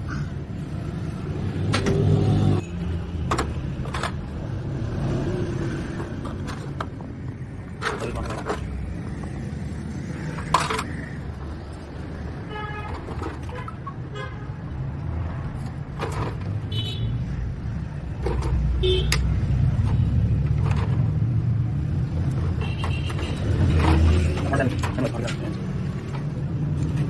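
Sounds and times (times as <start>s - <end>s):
vehicle engine rumbling: 0.0s - 27.0s.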